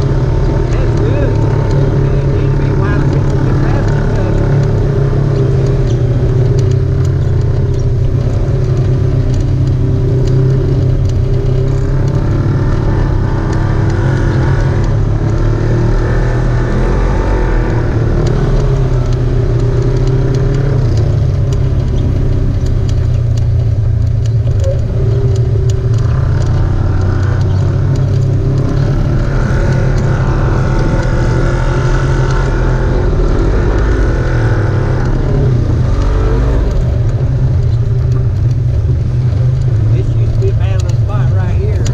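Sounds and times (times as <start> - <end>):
off-road vehicle engine running: 0.0 - 41.9.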